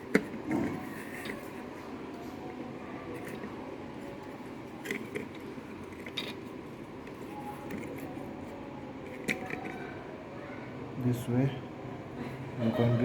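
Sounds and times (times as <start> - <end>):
plastic parts clicking and scraping: 4.2 - 8.3, 9.0 - 9.8.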